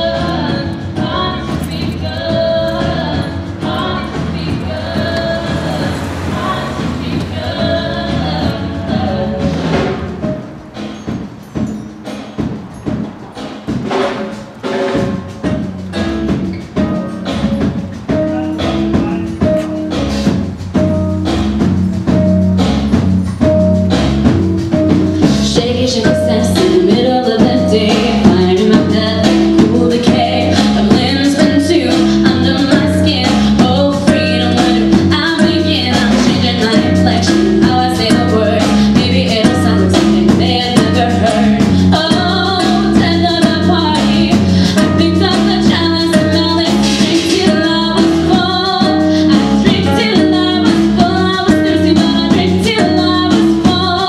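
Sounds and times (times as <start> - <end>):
woman singing: 0.0 - 10.4, 25.3 - 54.0
guitar: 0.0 - 13.8, 14.5 - 54.0
drum kit: 0.0 - 54.0.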